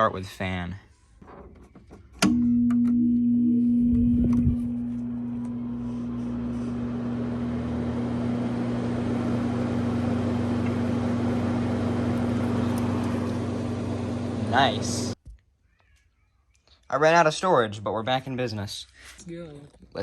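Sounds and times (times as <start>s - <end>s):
steady electrical hum: 2.4s - 7.0s
blower fan airflow rushing: 3.9s - 15.2s.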